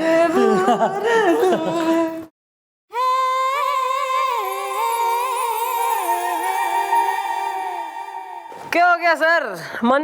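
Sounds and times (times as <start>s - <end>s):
wordless sung melody: 3.0s - 8.7s.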